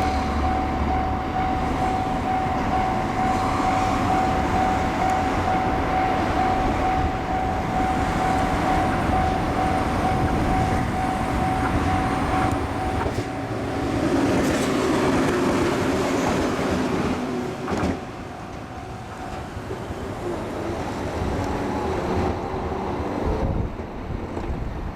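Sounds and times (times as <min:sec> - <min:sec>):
level crossing bell ringing: 0:00.0 - 0:13.0
train rumbling over rails: 0:00.0 - 0:24.9.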